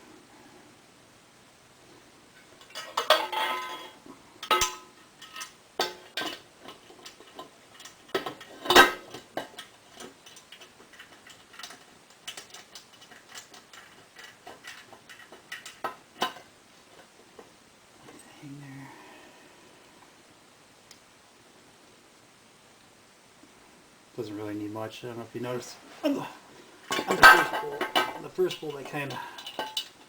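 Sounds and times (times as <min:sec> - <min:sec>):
metal clinks and clanks: 0:26.9 - 0:30.0.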